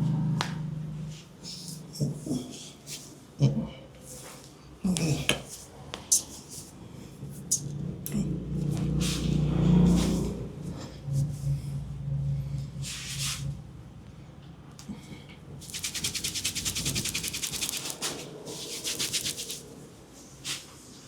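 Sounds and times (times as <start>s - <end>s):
hands rubbing hair and scalp: 15.6s - 19.7s.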